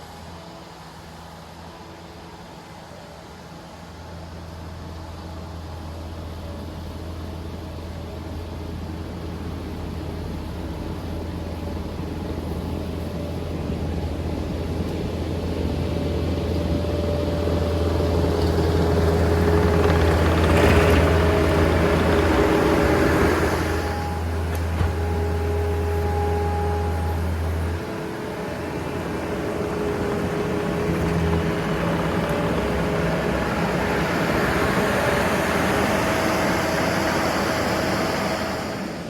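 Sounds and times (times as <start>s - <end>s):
diesel engine running: 0.0s - 39.0s.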